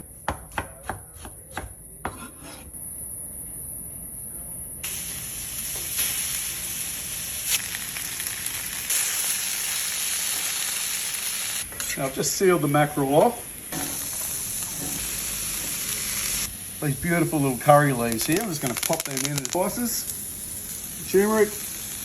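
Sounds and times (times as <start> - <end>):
knife chopping on cutting board: 0.2 - 2.6
fish sizzling in hot oil: 4.8 - 22.0.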